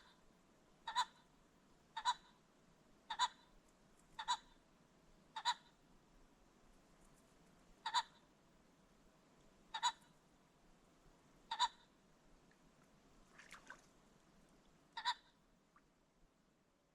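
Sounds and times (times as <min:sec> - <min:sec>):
pheasant calling: 0:00.8 - 0:01.3, 0:01.9 - 0:02.4, 0:03.1 - 0:03.6, 0:04.2 - 0:04.6, 0:05.3 - 0:05.8, 0:07.8 - 0:08.2, 0:09.7 - 0:10.1, 0:11.5 - 0:11.9, 0:15.0 - 0:15.4.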